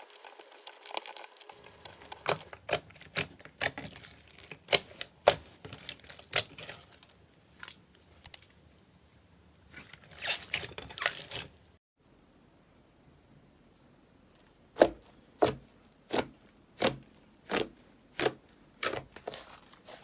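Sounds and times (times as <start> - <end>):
slime crackling: 0.4 - 7.8.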